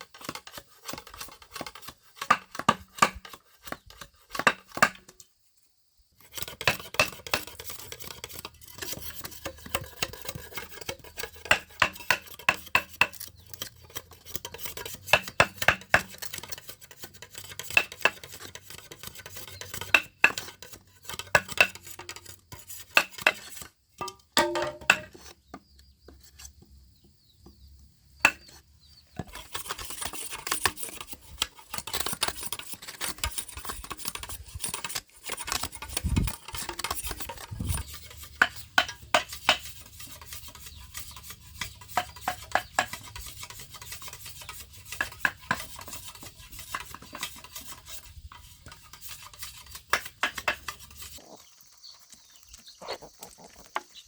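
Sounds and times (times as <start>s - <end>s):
scraping: 6.4s - 25.3s, 29.1s - 51.4s
objects knocking and clinking: 24.0s - 25.1s.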